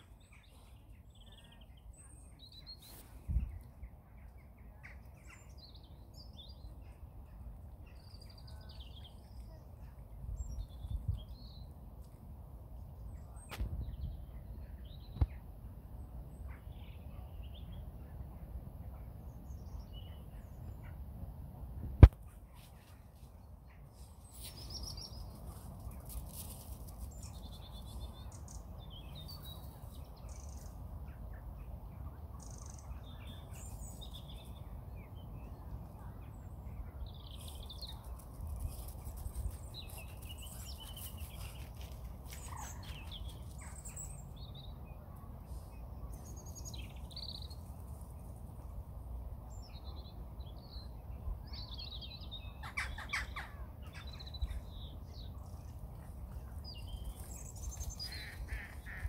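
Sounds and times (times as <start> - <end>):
birds chirping: 49.5 - 59.0.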